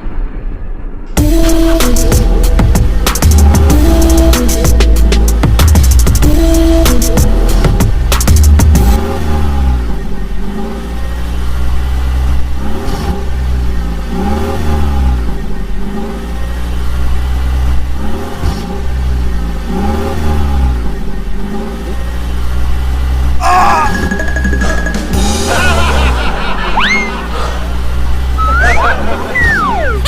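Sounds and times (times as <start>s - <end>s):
deep steady rumble: 0.0s - 14.2s
vehicle engine revving: 1.2s - 23.4s, 24.8s - 30.0s.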